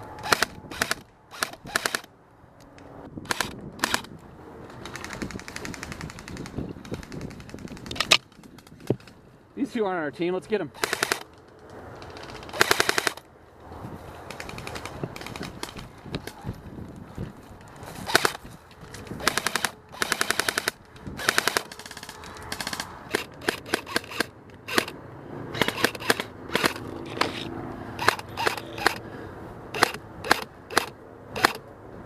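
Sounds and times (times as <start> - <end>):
airsoft rifles firing: 10.8 - 11.3, 12.2 - 13.2, 18.1 - 18.4, 19.2 - 25.0.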